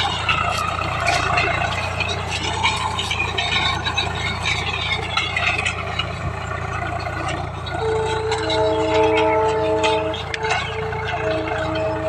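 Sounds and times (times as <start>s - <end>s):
engine humming with rattling: 0.0s - 12.0s.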